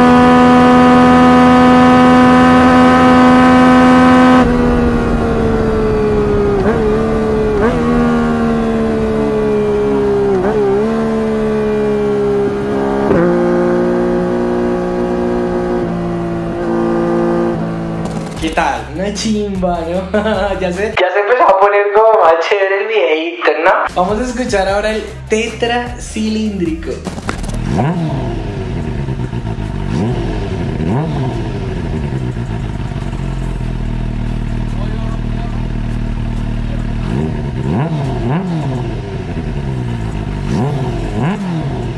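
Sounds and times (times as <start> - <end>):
motorcycle engine revving high: 0.0 - 19.4, 27.1 - 41.9
motorcycle engine idling: 27.1 - 41.9.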